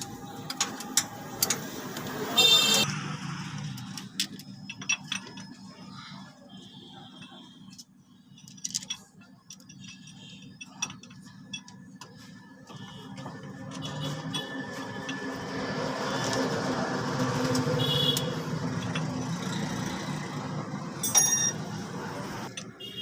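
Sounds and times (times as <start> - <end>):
hand tools clinking on metal: 21.0 - 21.9.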